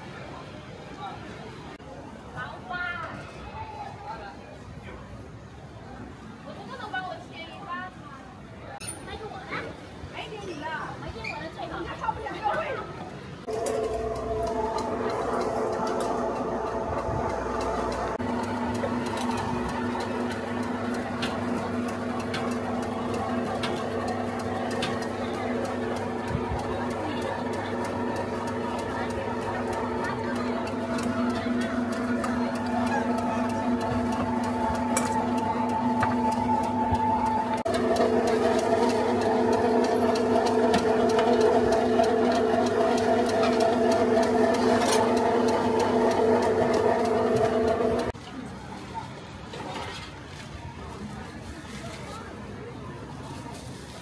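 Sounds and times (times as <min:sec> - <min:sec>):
low machine hum: 0:13.5 - 0:48.2.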